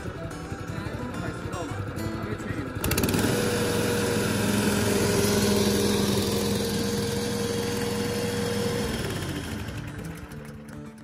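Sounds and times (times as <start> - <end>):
lawn mower engine running: 0.0 - 11.0.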